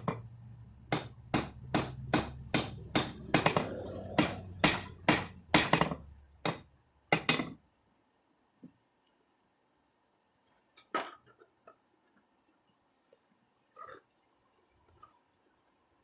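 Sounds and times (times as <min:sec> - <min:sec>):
hammer ringing on anvil: 0:00.9 - 0:06.6.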